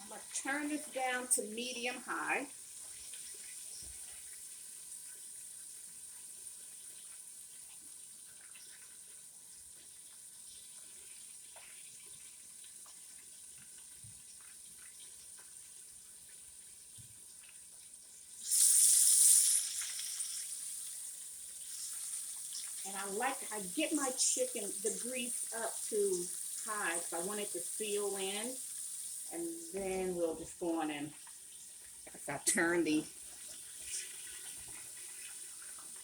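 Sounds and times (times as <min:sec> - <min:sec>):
chicken frying in hot oil: 0:00.0 - 0:36.0
loud burst of sizzling: 0:18.4 - 0:29.8.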